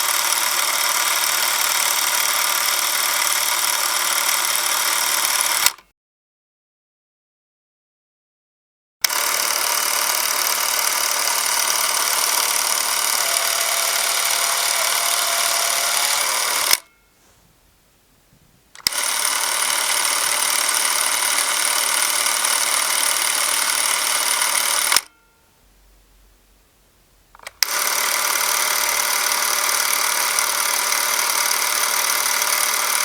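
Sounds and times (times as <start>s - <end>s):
film camera motor whirring: 0.0s - 5.8s, 9.0s - 17.0s, 18.8s - 25.1s, 27.4s - 33.0s.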